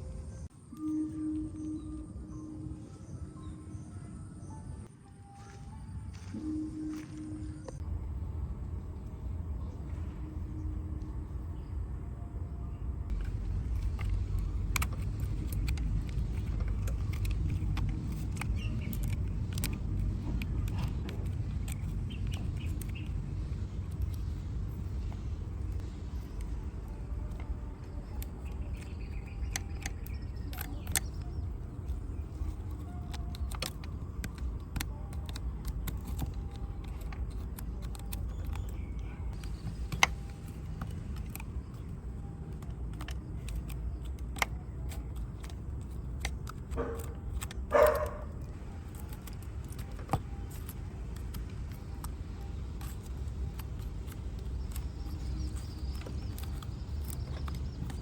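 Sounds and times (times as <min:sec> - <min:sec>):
steady low rumble: 0:00.0 - 0:58.0
small clicks and taps on toy: 0:13.1 - 0:58.0.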